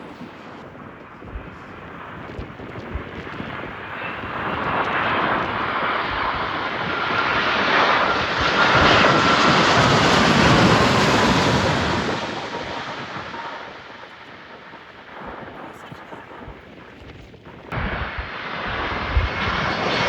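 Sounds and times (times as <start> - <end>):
airliner passing overhead: 0.0 - 20.0
high falling whine: 17.8 - 20.0.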